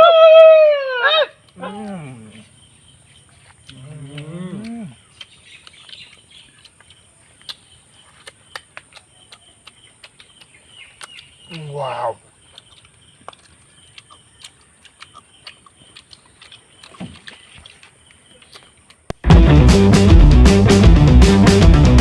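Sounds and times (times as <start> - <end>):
loud high animal call: 0.0 - 2.2
lower shorter animal calls: 11.5 - 12.2.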